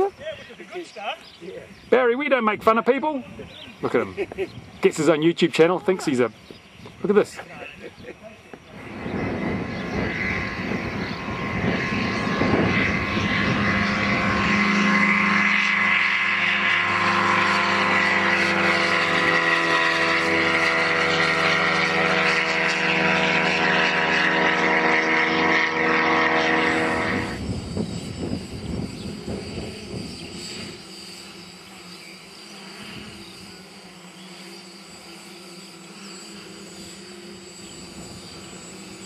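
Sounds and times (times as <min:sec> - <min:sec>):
model aircraft motor whine: 0:00.0 - 0:39.0
wind on microphone: 0:01.5 - 0:04.9, 0:07.6 - 0:16.6, 0:22.2 - 0:30.9.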